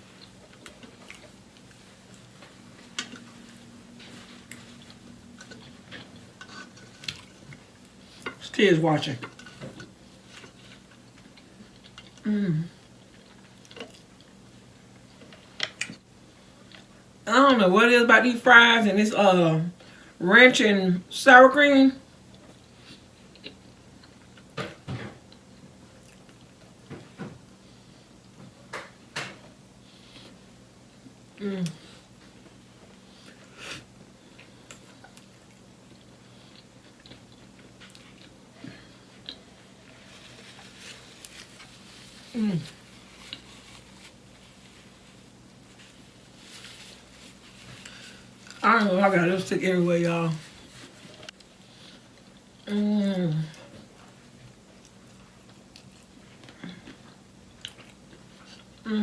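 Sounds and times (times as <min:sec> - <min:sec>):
faint room hum: 0:00.0 - 0:59.0
chewing food: 0:04.0 - 0:08.4, 0:09.2 - 0:16.0, 0:22.3 - 0:24.6, 0:25.2 - 0:27.1, 0:34.3 - 0:46.0, 0:53.5 - 0:58.8.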